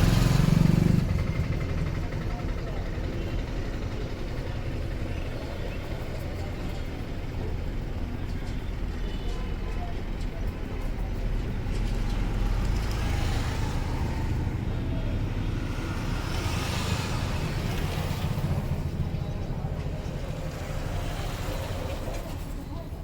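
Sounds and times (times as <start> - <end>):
road traffic rumble: 0.0 - 23.0
vehicle passing: 11.6 - 23.0.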